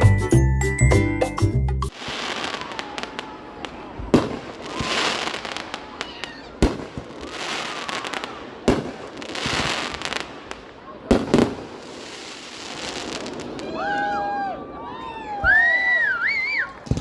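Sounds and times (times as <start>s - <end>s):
fireworks crackling and hissing: 1.9s - 14.0s, 16.3s - 17.0s
fireworks bangs: 1.9s - 17.0s.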